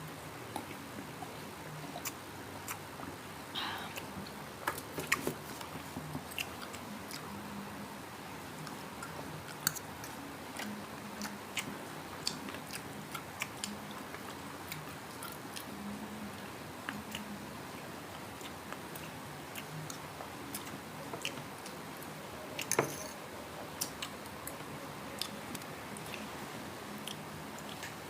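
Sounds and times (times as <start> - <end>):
chewing crispy pork: 4.0 - 7.4, 8.5 - 17.4, 18.1 - 22.7.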